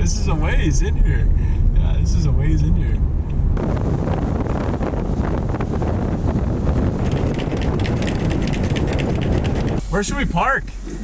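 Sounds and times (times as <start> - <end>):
wind buffeting microphone: 1.1 - 10.8
quick sharp crunching clicks: 7.0 - 9.8.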